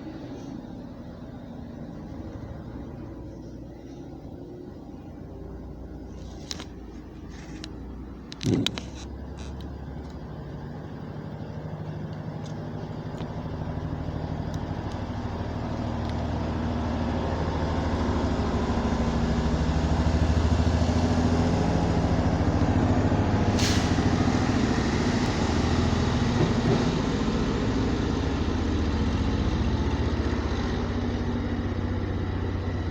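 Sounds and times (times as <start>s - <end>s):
diesel engine running: 0.0s - 32.9s
brief sharp hiss: 23.6s - 24.1s.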